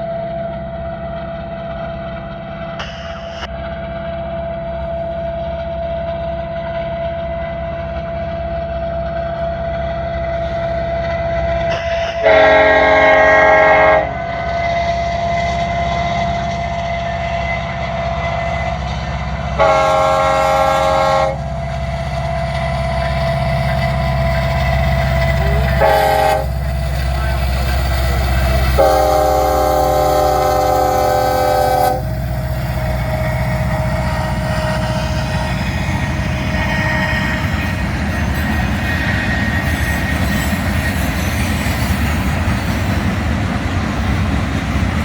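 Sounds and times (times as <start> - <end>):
diesel locomotive engine rumble: 0.0 - 45.0
train air horn blasts: 11.7 - 15.4, 19.6 - 21.6, 25.3 - 27.4, 28.6 - 37.8.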